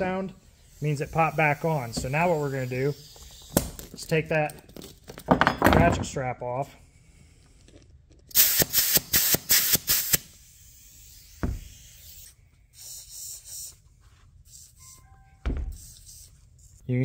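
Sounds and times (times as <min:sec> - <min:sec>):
short high hisses: 0:08.3 - 0:13.8
thump: 0:11.4 - 0:11.7, 0:15.4 - 0:15.8.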